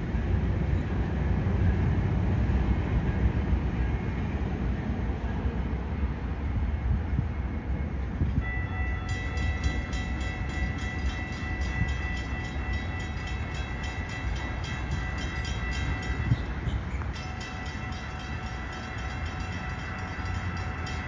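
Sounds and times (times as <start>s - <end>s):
railroad crossing bell ringing: 8.2s - 21.0s.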